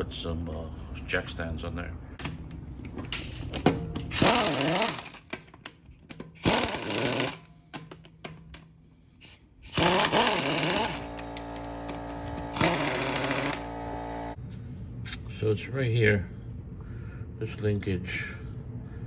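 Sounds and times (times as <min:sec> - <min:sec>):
power tool whirring: 0:04.1 - 0:05.2, 0:06.4 - 0:07.5, 0:09.6 - 0:14.4.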